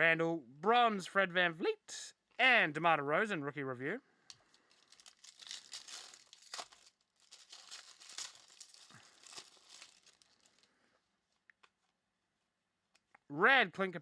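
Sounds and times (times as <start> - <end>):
foil wrapper crinkling and tearing: 4.3 - 10.7.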